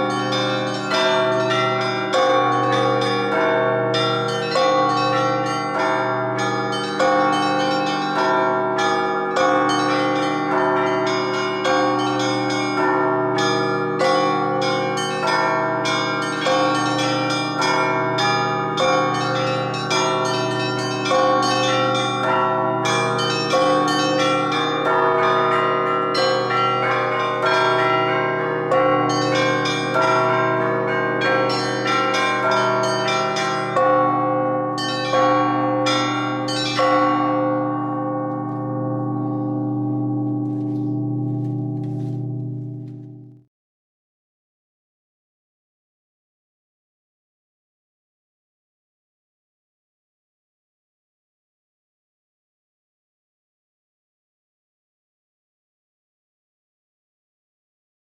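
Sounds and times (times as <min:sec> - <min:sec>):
church bells pealing: 0:00.0 - 0:43.3.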